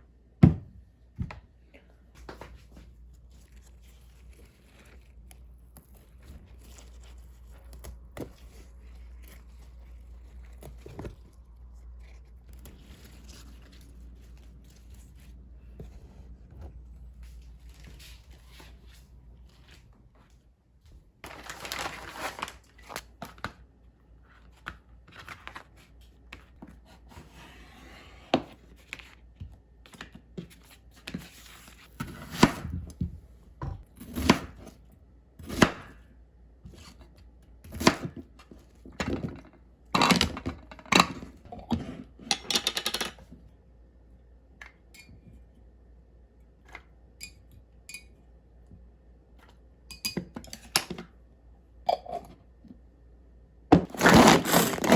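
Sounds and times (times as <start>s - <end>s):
packaging rustling and tearing: 21.3s - 23.2s, 53.9s - 54.9s.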